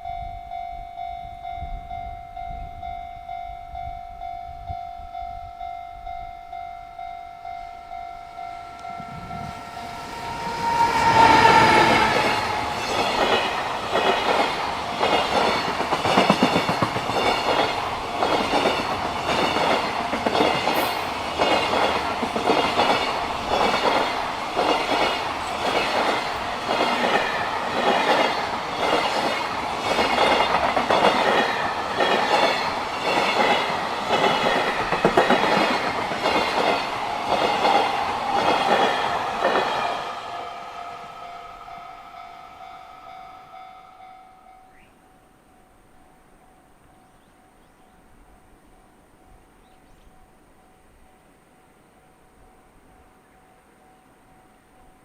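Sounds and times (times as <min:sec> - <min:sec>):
level crossing warning bell: 0:00.0 - 0:14.2, 0:15.1 - 0:47.7
freight train passing: 0:00.0 - 0:49.7
train wheels clattering: 0:09.1 - 0:40.2.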